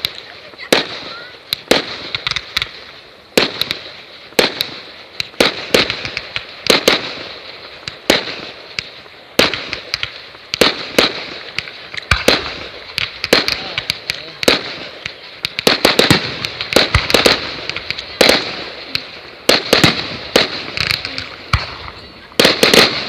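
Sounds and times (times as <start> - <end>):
fireworks bangs: 0.0 - 23.0
fireworks pops and crackles: 0.0 - 23.0.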